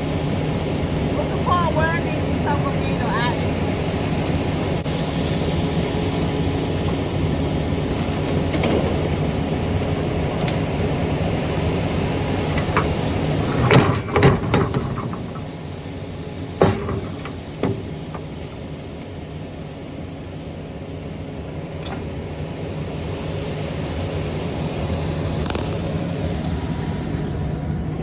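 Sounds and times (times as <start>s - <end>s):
truck engine running: 0.0s - 28.0s
loud knocks: 16.6s - 18.3s.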